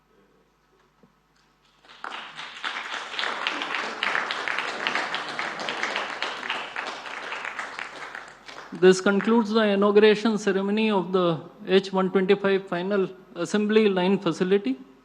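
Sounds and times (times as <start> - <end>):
audience applause: 1.6 - 9.3.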